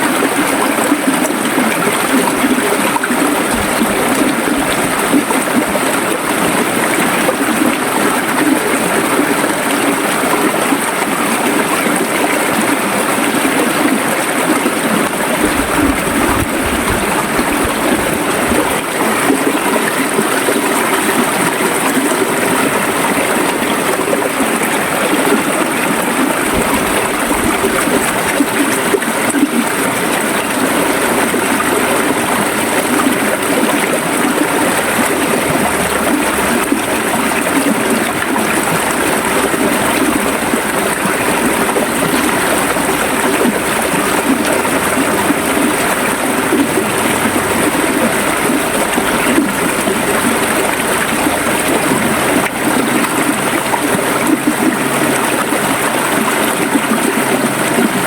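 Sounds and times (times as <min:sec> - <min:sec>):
river water flowing and gurgling: 0:00.0 - 0:58.0.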